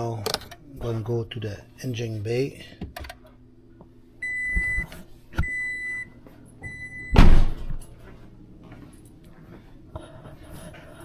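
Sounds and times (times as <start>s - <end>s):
electronic warning chime beeps: 4.2s - 7.2s
loud thump: 7.2s - 7.8s.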